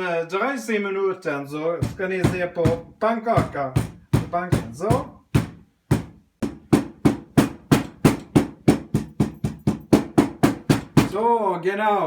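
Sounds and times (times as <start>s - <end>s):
hammer pounding dough: 1.8s - 11.2s.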